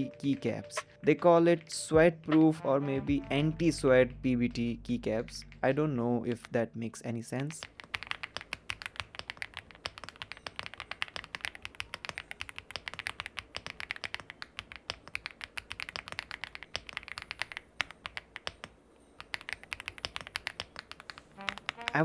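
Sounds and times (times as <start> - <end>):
fast typing on mechanical keyboard: 7.4 - 22.0.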